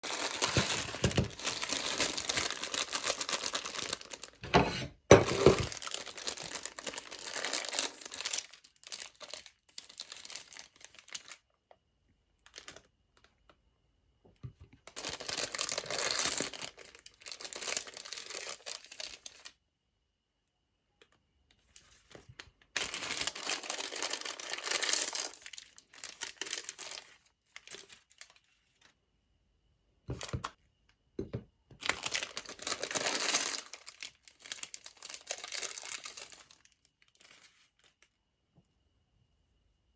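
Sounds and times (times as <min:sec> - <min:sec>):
plastic wrappers crinkling and tearing: 0:00.0 - 0:04.5, 0:05.2 - 0:11.6, 0:12.4 - 0:13.4, 0:14.8 - 0:19.5, 0:21.9 - 0:28.9, 0:31.8 - 0:38.1.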